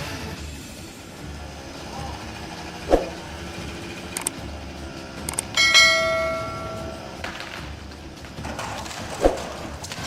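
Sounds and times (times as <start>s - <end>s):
bell-like metallic strike: 5.6s - 7.2s.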